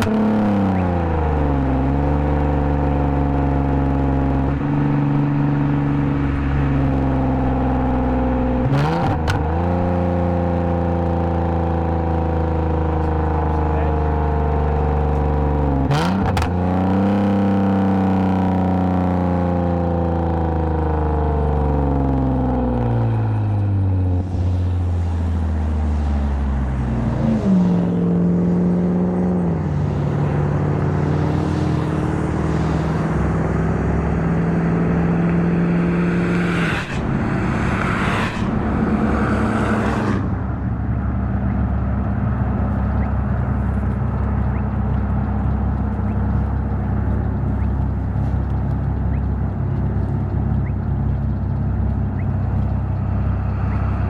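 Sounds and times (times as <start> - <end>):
car engine revving while driving: 0.0 - 54.0
short rushing noises: 34.6 - 40.9.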